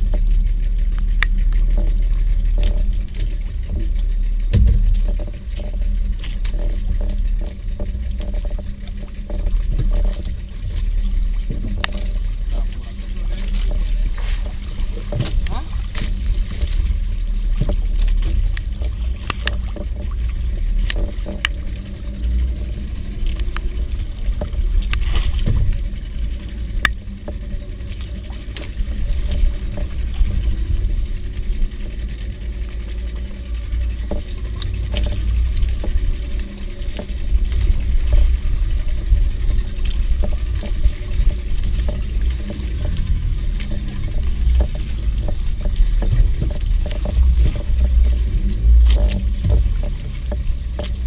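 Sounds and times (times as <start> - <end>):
wind and water rumble: 0.0 - 51.0
sharp ticks: 0.1 - 4.5, 18.4 - 51.0.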